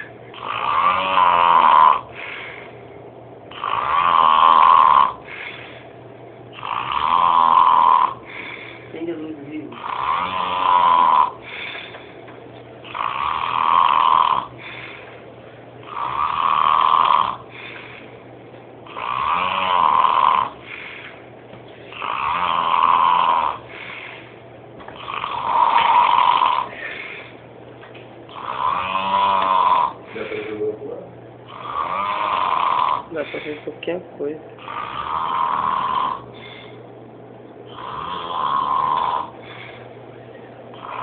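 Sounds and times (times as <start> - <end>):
man snoring: 0.0 - 2.8, 3.5 - 5.8, 6.5 - 12.0, 12.8 - 15.2, 15.8 - 18.2, 18.8 - 21.2, 21.9 - 24.4, 25.0 - 27.4, 28.3 - 30.8, 31.5 - 33.7, 34.6 - 36.8, 37.7 - 39.9, 40.7 - 41.0
quiet breathing: 2.0 - 3.0, 5.0 - 6.6, 8.0 - 9.2, 11.2 - 12.4, 14.4 - 16.2, 17.2 - 22.2, 23.2 - 25.1, 25.7 - 27.5, 28.4 - 30.9, 32.2 - 33.9, 34.9 - 36.9, 37.7 - 41.0.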